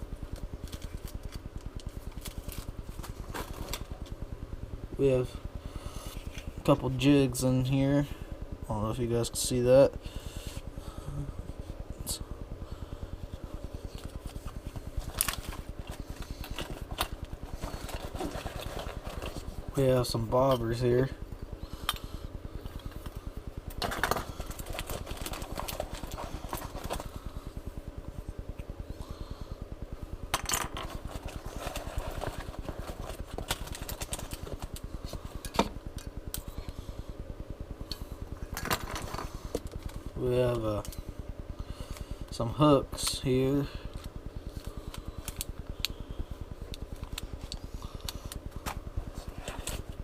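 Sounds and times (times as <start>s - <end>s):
steady low pulsing: 0.0s - 50.0s
rummaging through plastic box: 14.1s - 19.5s, 23.8s - 27.1s, 30.6s - 34.8s.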